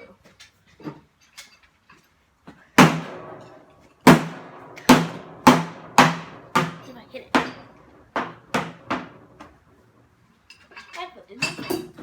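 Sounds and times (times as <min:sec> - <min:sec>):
hammer striking steel tank: 0:02.8 - 0:09.6.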